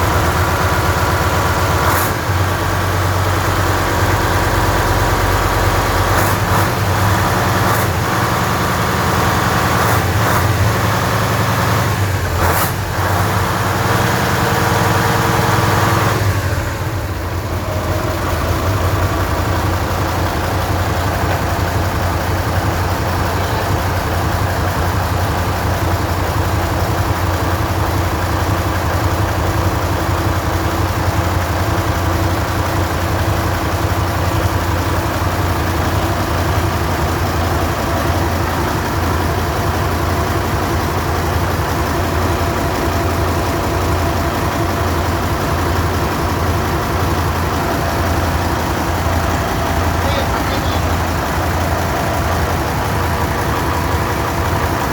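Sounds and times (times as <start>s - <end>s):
diesel engine running: 0.0s - 54.9s
sharp engine knocks: 20.8s - 22.1s.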